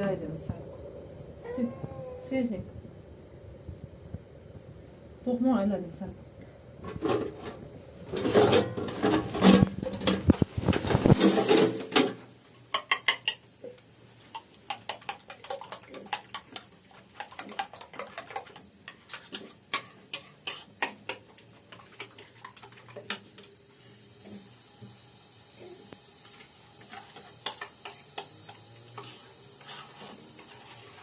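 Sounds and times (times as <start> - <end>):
loud clattering and rustling: 6.8 - 12.2.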